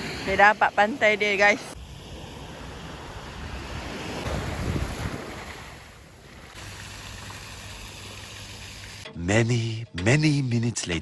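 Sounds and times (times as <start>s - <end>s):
surf washing onto beach: 0.0s - 7.5s
wind buffeting microphone: 1.5s - 6.6s.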